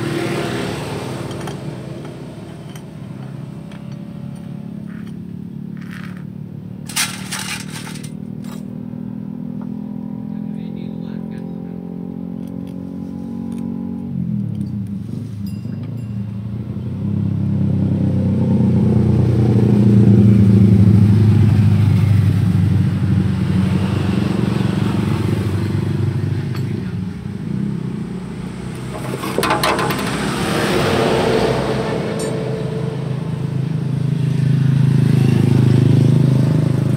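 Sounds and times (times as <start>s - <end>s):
motorcycle engine running: 26.0s - 36.9s.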